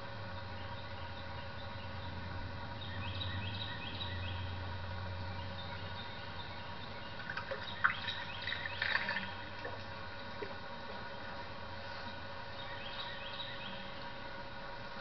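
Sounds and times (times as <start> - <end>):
steady low hum: 0.0 - 15.0
bird calling: 5.3 - 14.2.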